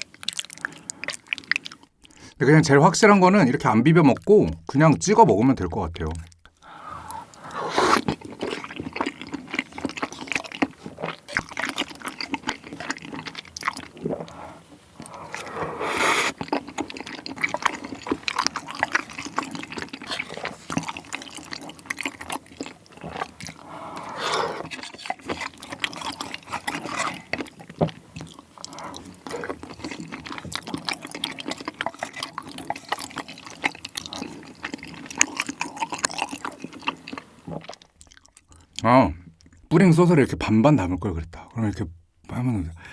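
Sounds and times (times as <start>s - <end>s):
slurping: 0.0s - 2.3s, 6.5s - 39.6s
wet eating and chewing: 0.0s - 2.6s, 5.9s - 40.1s.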